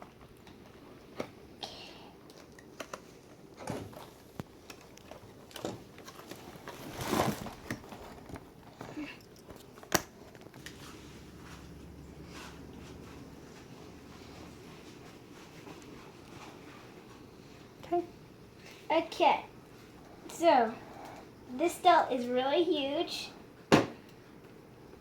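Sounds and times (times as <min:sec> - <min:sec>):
packaging rustle: 0:02.5 - 0:10.9.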